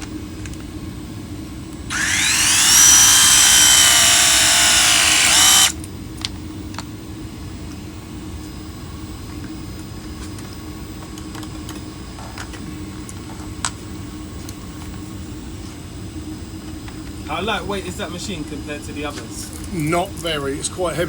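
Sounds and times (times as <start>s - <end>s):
pipe press motor whining: 1.9s - 5.8s.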